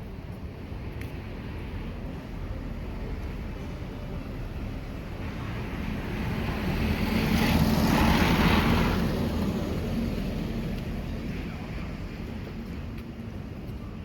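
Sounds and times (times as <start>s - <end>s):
vehicle passing by: 5.2s - 11.1s.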